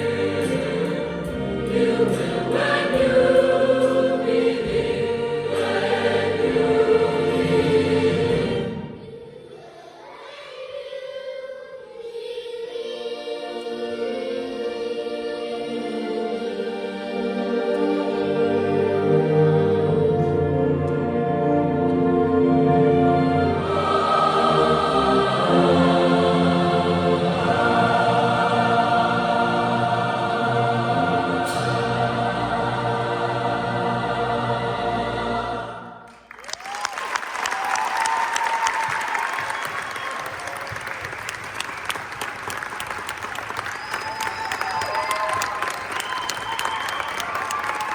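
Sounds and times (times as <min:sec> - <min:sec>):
choir singing: 0:00.0 - 0:36.3.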